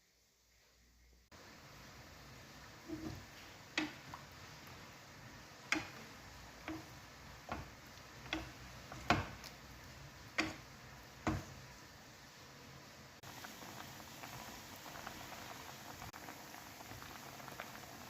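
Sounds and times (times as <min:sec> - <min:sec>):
light clicks and knocks: 0:05.6 - 0:09.6, 0:10.3 - 0:11.6.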